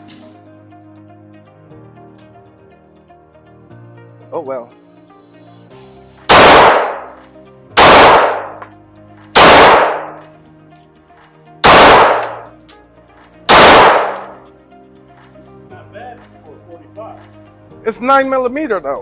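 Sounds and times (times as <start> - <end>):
pistol shots with echo: 6.3 - 7.2, 7.8 - 8.7, 9.4 - 10.2, 11.6 - 12.6, 13.5 - 14.4.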